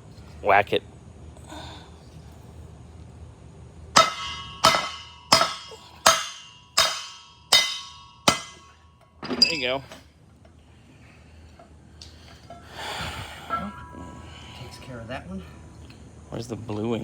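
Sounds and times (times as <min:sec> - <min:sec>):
hammer striking metal: 0:04.0 - 0:09.6, 0:13.5 - 0:14.0.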